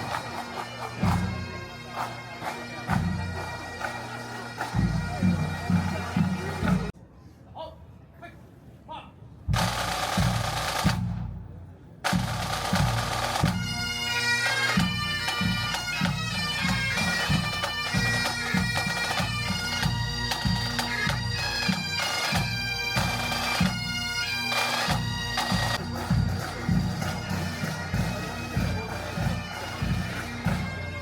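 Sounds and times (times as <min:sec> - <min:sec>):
bagpipes playing over a drone: 0:00.0 - 0:06.9, 0:13.2 - 0:31.0
pipe band drums: 0:00.0 - 0:06.9, 0:09.5 - 0:31.0.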